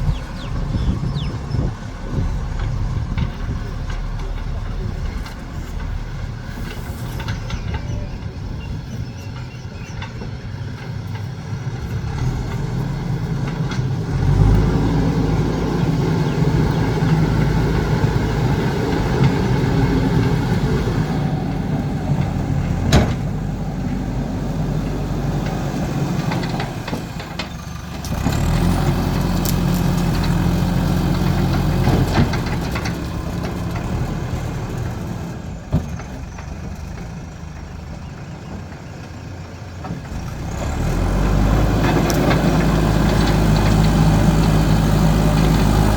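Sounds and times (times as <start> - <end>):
diesel engine revving: 0.0 - 45.9.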